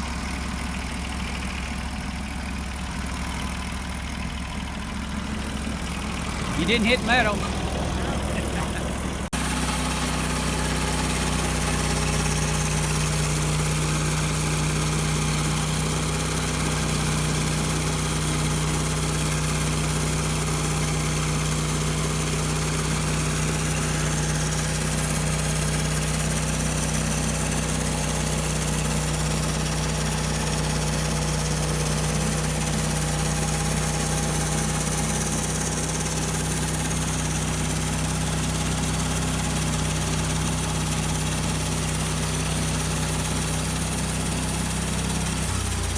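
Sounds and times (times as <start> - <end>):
sawmill engine running: 0.0 - 45.9
band saw cutting log: 5.3 - 45.9.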